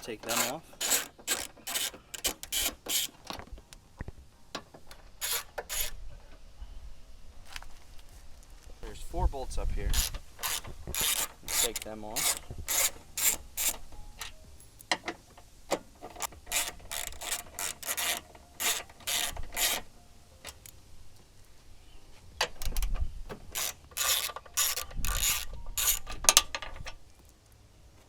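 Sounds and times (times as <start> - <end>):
hand ratchet clicking: 0.0 - 3.2, 5.2 - 6.0, 10.0 - 14.4, 16.1 - 19.9, 23.4 - 26.9.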